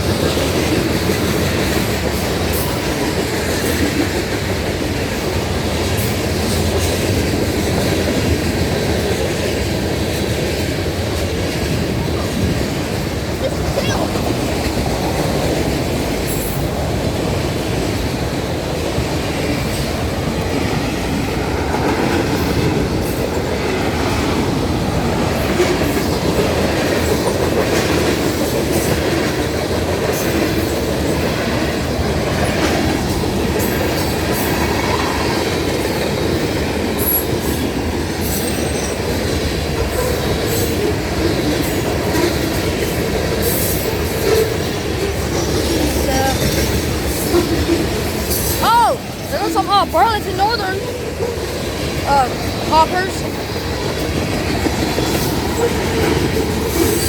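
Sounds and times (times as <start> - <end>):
freight train rumbling past: 0.0 - 57.0
wheels clicking over rail joints: 53.3 - 57.0.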